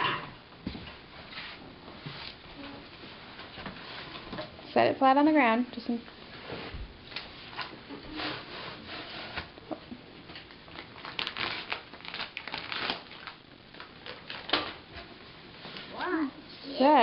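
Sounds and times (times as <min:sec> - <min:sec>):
packaging crinkling and rustling: 0:07.1 - 0:15.1.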